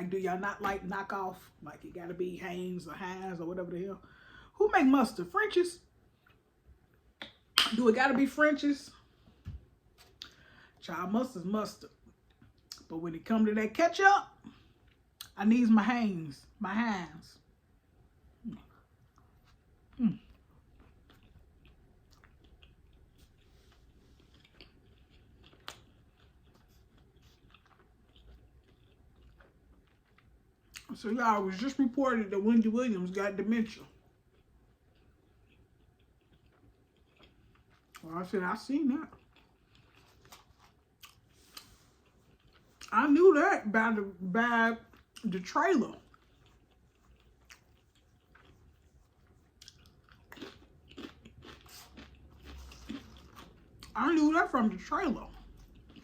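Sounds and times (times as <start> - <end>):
person chewing: 18.5 - 31.0, 34.0 - 38.1, 39.0 - 42.9, 46.0 - 54.0, 55.2 - 56.0.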